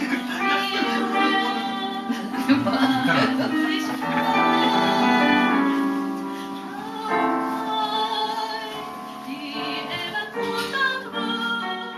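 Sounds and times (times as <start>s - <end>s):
music with held notes and chords: 0.0s - 11.9s.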